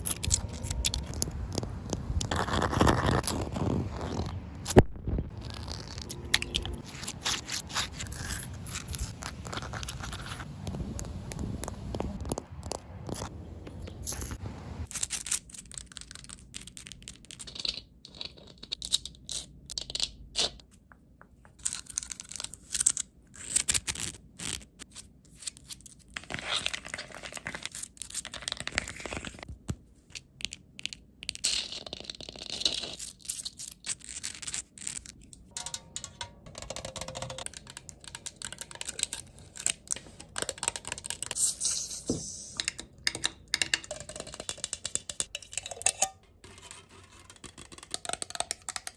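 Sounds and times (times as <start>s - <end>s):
crinkling and tearing: 0.0s - 13.3s
tapping and scratching objects: 34.9s - 48.9s.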